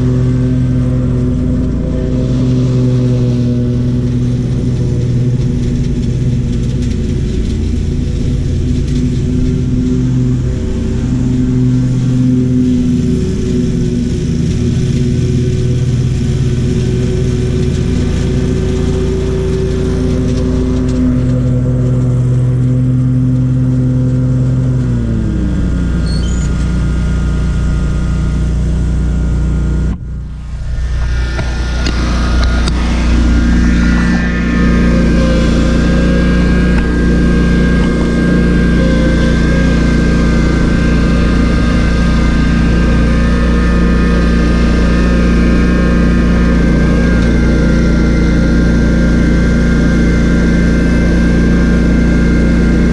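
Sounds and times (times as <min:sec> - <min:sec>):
high whine: 0:00.0 - 0:52.9
lawn mower engine running: 0:00.0 - 0:52.9.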